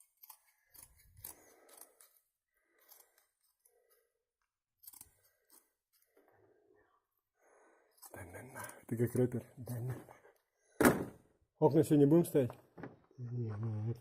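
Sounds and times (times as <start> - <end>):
scissors snipping: 0.0 - 2.2, 4.8 - 6.1.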